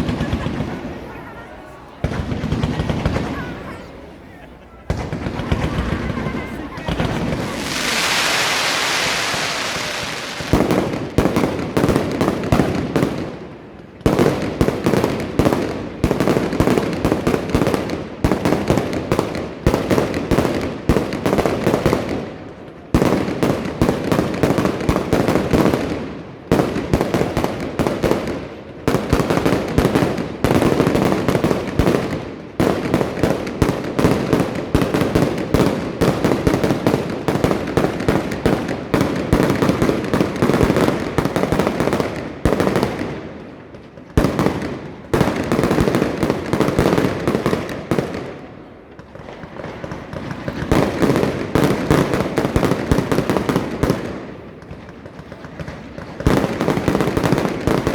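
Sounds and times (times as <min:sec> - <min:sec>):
fireworks hissing rush: 0:00.0 - 0:11.5
fireworks bangs and crackling: 0:00.0 - 0:57.9.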